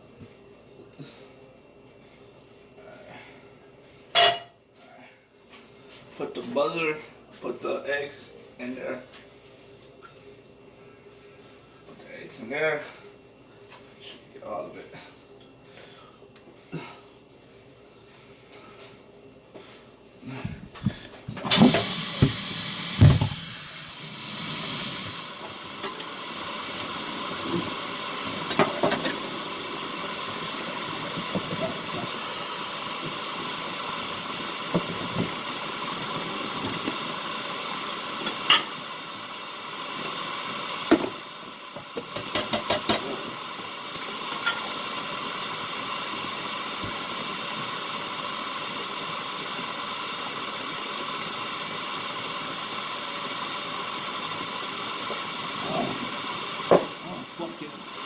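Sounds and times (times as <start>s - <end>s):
eggs sizzling in a skillet: 20.8s - 58.0s.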